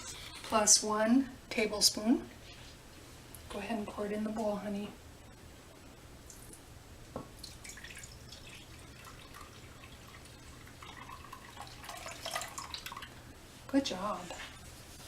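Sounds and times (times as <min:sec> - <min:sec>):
milk trickling into bowl: 0:07.4 - 0:13.2.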